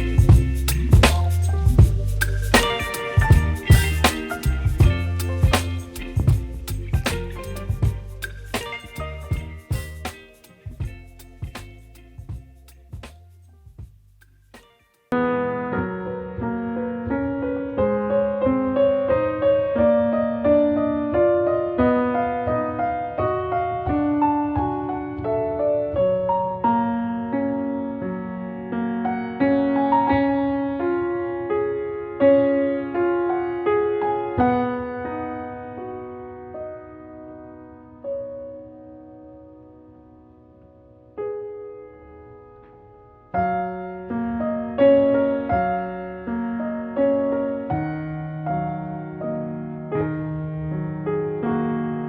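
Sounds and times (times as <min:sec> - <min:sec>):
soft piano piece: 0:00.0 - 0:13.9, 0:14.5 - 0:52.0.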